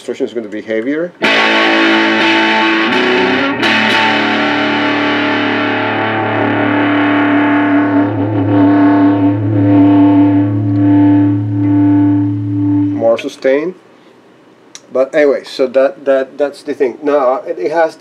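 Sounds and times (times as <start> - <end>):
distorted electric guitar chords: 1.2 - 13.2.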